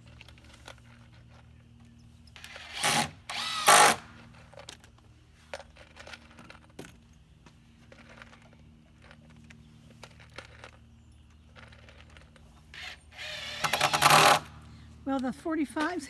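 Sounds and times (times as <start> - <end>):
power drill driving screws: 2.4 - 4.3, 12.7 - 14.8
handling knocks and clicks: 4.5 - 12.8.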